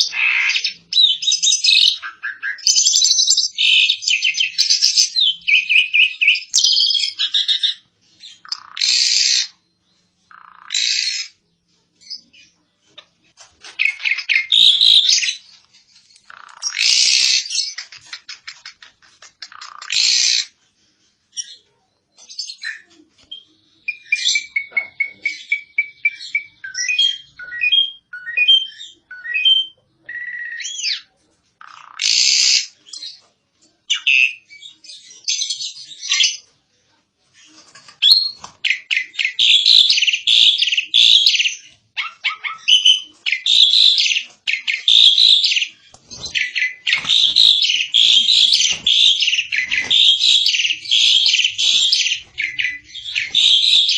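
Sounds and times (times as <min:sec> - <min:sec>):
starling chattering: 0:13.7 - 0:15.5, 0:16.2 - 0:20.6, 0:38.6 - 0:53.9
whistled bird notes: 0:22.4 - 0:31.1, 0:38.0 - 0:53.9.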